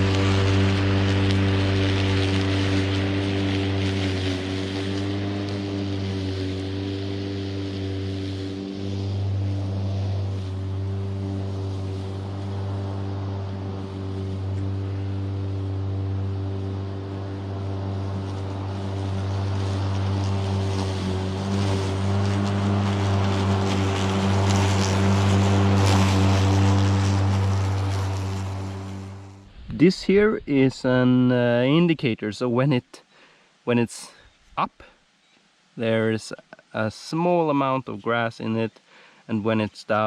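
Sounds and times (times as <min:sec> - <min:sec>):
electric lawnmower humming: 0:00.0 - 0:29.5.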